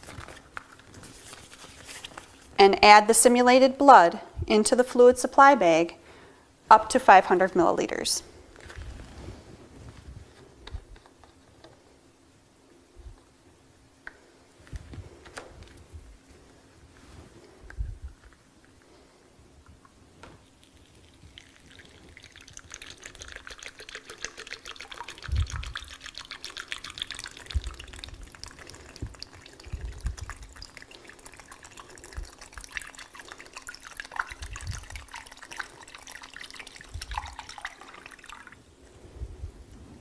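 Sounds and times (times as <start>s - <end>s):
liquid trickling into plastic bag: 20.4s - 38.6s.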